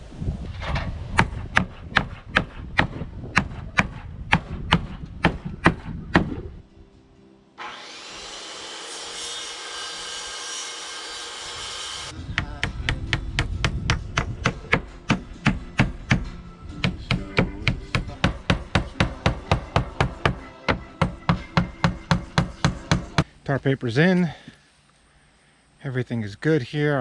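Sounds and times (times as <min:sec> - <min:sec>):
hammer strikes on wood: 0:01.2 - 0:06.3, 0:12.4 - 0:23.2.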